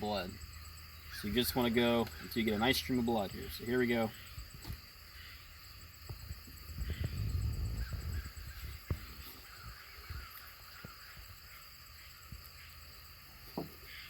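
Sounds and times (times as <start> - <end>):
muffled thumps and rustling: 4.4 - 4.9, 6.0 - 11.3.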